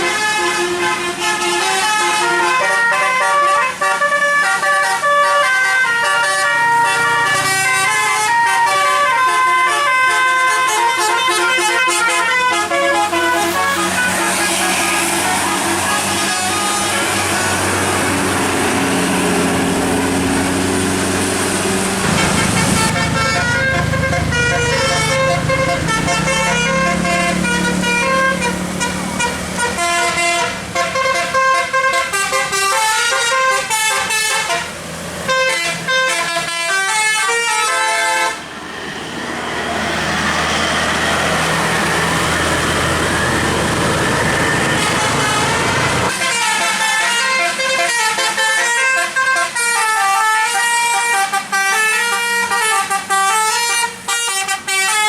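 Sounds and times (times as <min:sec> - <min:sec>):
musical air horn tune: 0:00.0 - 0:18.3, 0:22.0 - 0:38.4, 0:40.5 - 0:55.0
loud steady rushing noise: 0:12.6 - 0:46.9.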